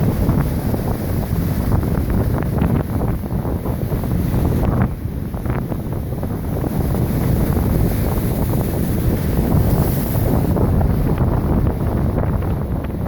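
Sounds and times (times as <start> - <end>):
wind buffeting microphone: 0.0 - 13.0
lake waves breaking: 6.4 - 13.0.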